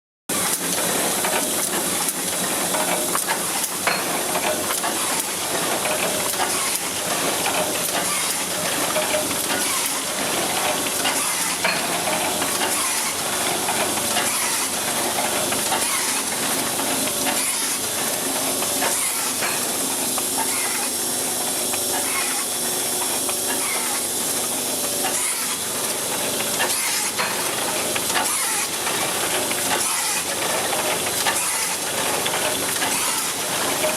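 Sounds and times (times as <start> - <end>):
book sewing machine hissing and clicking: 0.3 - 33.9.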